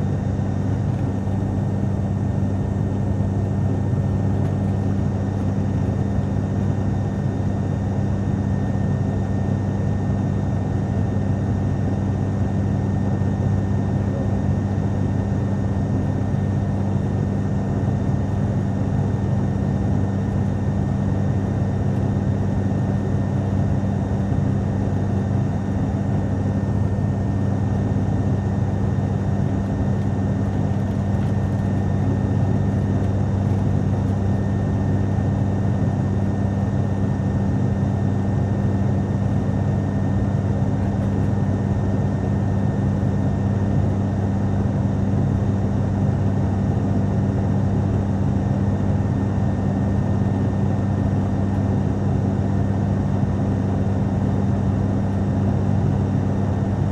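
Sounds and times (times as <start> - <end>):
propeller engine drone: 0.0 - 56.9.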